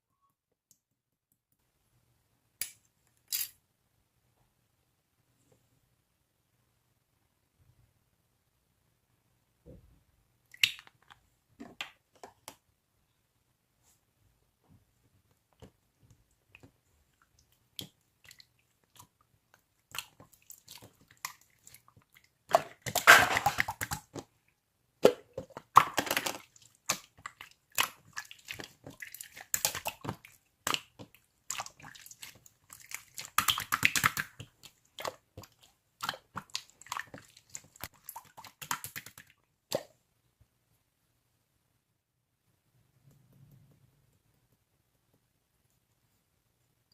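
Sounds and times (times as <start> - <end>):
slime clicking and squelching: 25.0 - 39.9.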